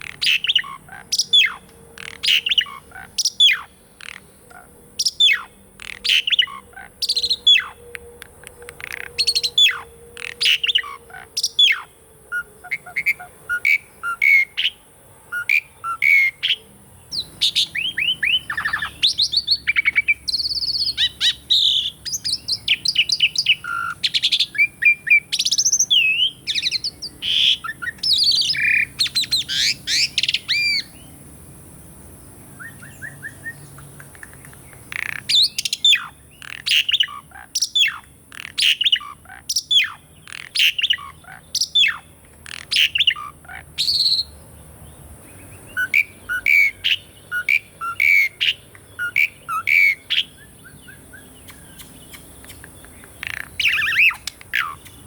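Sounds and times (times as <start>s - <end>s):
starling singing: 0.0s - 31.2s, 32.5s - 44.4s, 45.3s - 55.0s.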